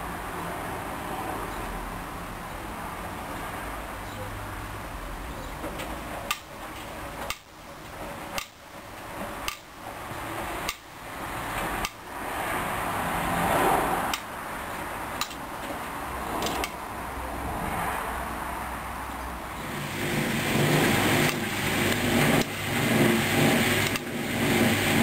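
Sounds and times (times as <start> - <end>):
washing machine drum tumbling: 19.6 - 25.0.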